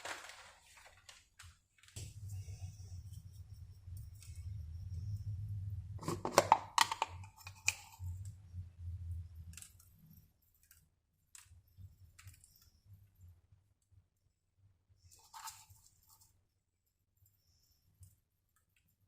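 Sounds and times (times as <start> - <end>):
low hum: 2.0 - 10.6.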